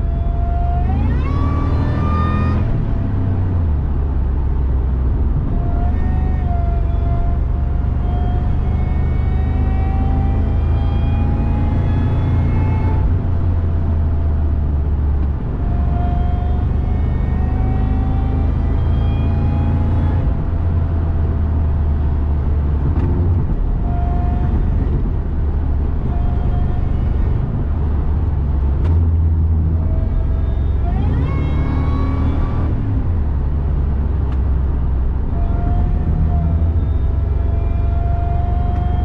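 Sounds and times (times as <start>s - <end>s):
deep engine drone: 0.0s - 39.0s
supercharger whine: 0.0s - 39.0s.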